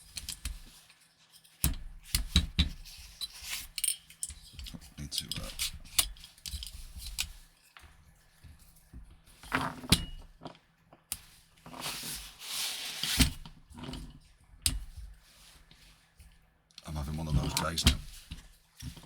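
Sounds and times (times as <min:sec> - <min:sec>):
rubbing or rustling: 0:02.8 - 0:09.9, 0:11.2 - 0:13.6, 0:14.8 - 0:16.3.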